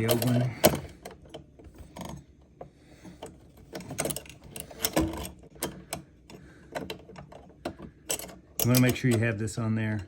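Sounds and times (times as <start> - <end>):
clicks and knocks of wire fitting: 3.1 - 9.4.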